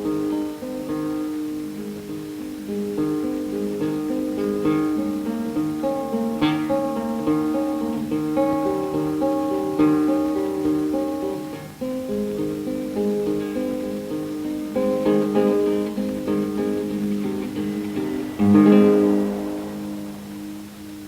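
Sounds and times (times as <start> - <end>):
acoustic guitar melody: 0.0 - 21.0.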